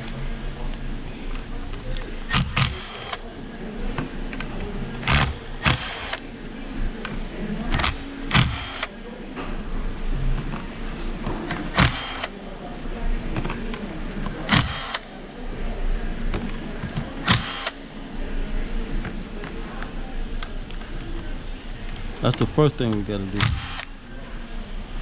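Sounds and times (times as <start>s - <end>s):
cordless power driver spinning: 2.0s - 3.3s, 4.4s - 6.2s, 7.7s - 9.0s, 11.5s - 12.4s, 14.3s - 15.1s, 17.2s - 17.8s, 23.4s - 23.9s.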